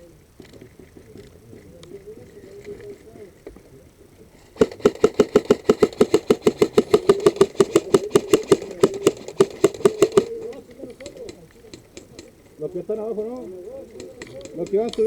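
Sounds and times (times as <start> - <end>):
airsoft gun full-auto burst: 4.5 - 12.4.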